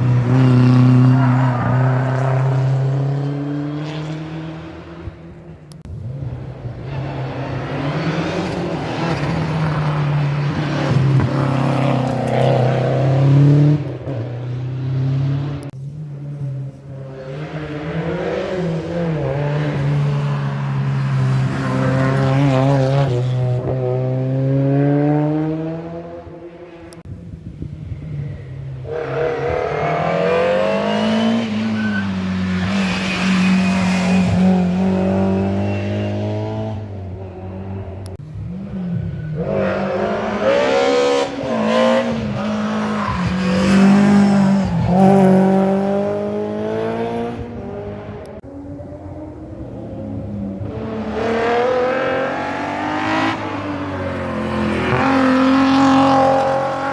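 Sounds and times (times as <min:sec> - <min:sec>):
rally car engines revving hard: 0:00.0 - 0:27.1, 0:27.8 - 0:56.9.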